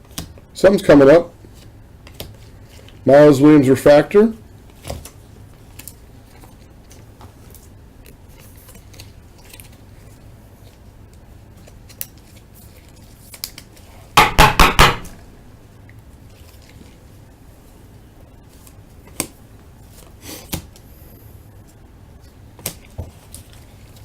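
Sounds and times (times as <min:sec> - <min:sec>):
sharp knocks clattering: 0:14.2 - 0:15.2.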